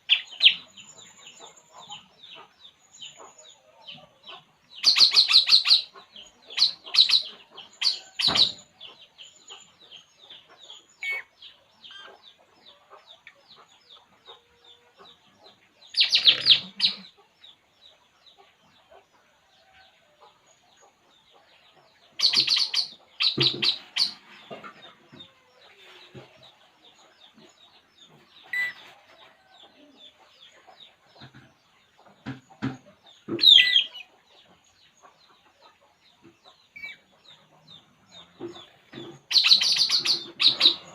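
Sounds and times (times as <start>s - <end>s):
soft bird chirps: 0.0s - 40.9s
bird chattering calls: 4.8s - 8.6s, 16.0s - 17.2s, 22.2s - 24.3s, 39.2s - 40.9s.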